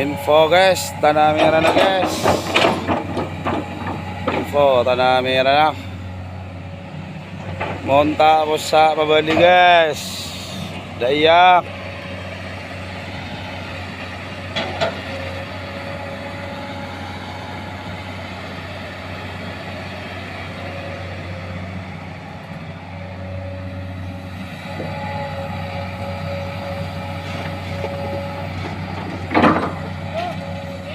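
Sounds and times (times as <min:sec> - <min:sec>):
heavy diesel machinery running: 0:00.0 - 0:30.9
short knocks: 0:01.3 - 0:04.6.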